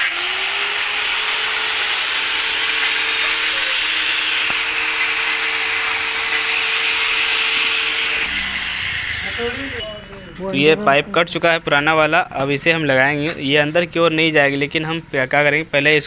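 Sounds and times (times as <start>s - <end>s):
electric cutter grinding metal pipe: 0.0s - 10.5s.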